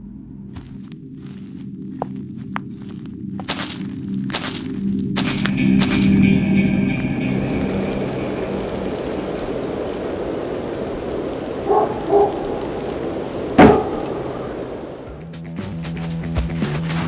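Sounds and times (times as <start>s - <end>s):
sudden loud hit: 13.6s - 14.0s.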